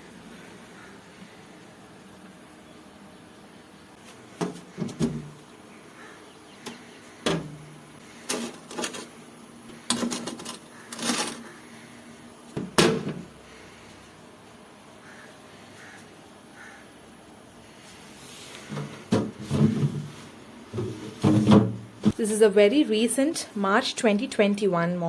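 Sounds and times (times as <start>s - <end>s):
refrigerator drawers and shelves knocking: 18.7s - 22.2s.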